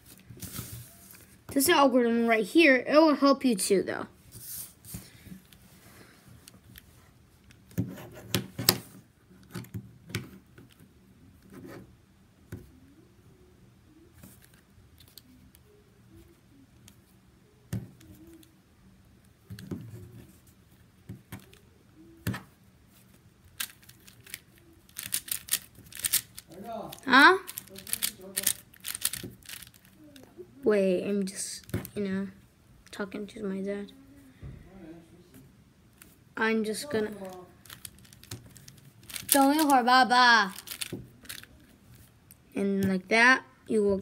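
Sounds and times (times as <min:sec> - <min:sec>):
plastic puzzle cube clicking: 0:23.5 - 0:30.0, 0:37.6 - 0:39.8, 0:40.5 - 0:41.5.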